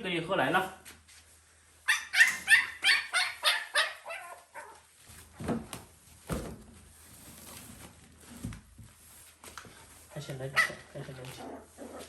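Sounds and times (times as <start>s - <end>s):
puppy yelping: 1.9s - 4.9s, 10.5s - 12.0s.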